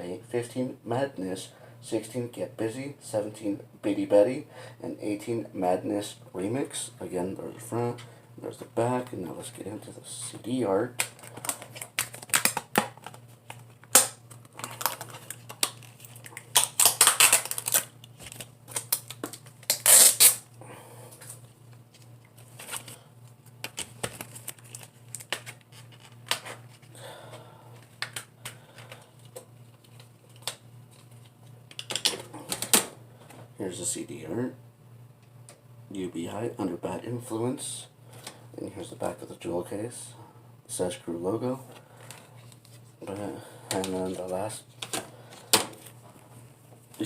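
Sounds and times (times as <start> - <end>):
paper and plastic rustling: 11.0 - 19.7, 23.6 - 26.9.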